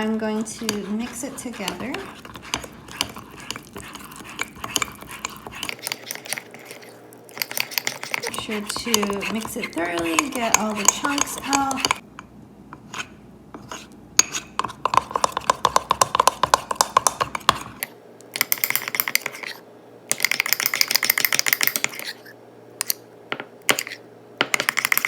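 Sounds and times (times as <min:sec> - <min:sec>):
utensil clinking in a mug: 0:00.6 - 0:12.0.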